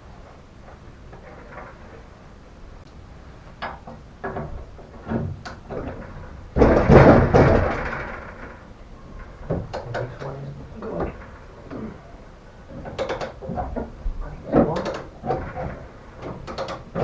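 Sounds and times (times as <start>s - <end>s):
loud rattling metal crash: 5.9s - 8.7s.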